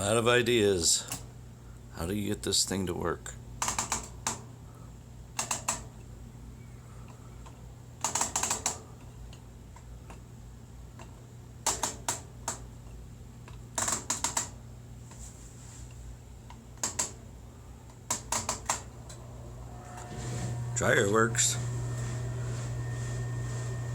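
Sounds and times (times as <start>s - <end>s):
steady low hum: 17.2s - 23.9s.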